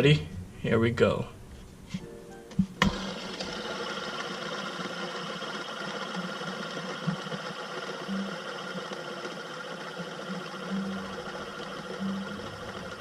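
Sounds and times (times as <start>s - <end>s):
fidget spinner whirring: 2.8s - 13.0s.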